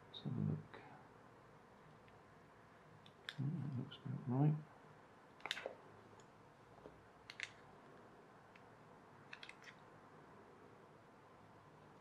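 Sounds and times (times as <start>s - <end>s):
plastic toy parts clicking: 7.3s - 7.6s, 9.3s - 9.8s.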